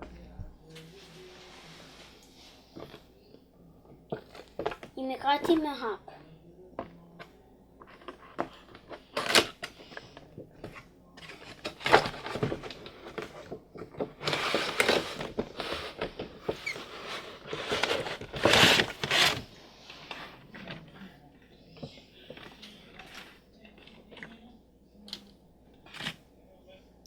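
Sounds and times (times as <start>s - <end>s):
cardboard packaging rustling: 7.8s - 20.9s.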